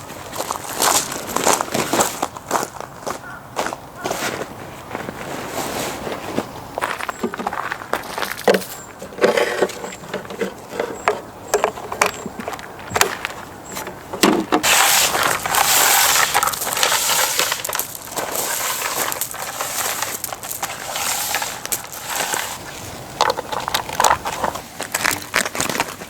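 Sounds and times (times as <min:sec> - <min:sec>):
dense continuous rustling: 0:00.0 - 0:03.2, 0:04.2 - 0:26.0
sharp snaps and crunches: 0:23.2 - 0:26.0.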